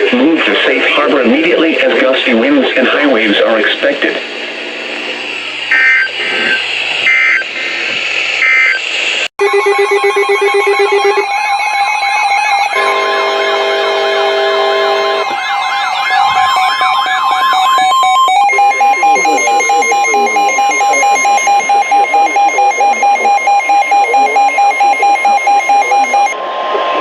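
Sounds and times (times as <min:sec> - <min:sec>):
rapid beeping tone: 0:09.4 - 0:26.4
steady alert tones: 0:09.4 - 0:26.4
warbling siren-like tones: 0:09.4 - 0:26.4.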